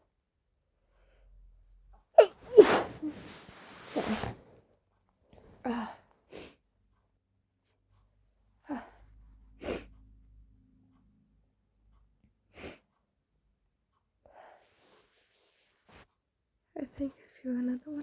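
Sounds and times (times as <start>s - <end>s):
woman sneezing: 2.2s - 4.3s.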